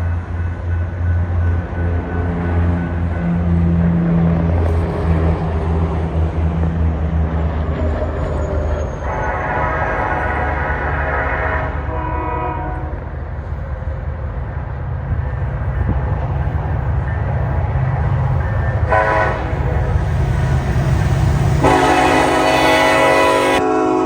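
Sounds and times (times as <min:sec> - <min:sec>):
freight train rumbling past: 0:00.0 - 0:24.0
locomotive horn blasts: 0:11.1 - 0:13.0, 0:18.8 - 0:24.0.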